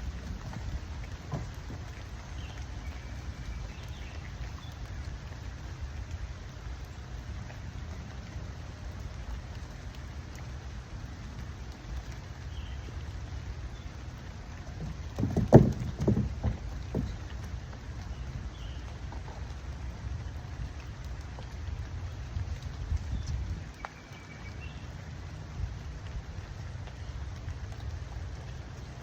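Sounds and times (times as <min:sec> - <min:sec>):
steady rain: 0:00.0 - 0:29.0
dull thumps: 0:14.8 - 0:17.5.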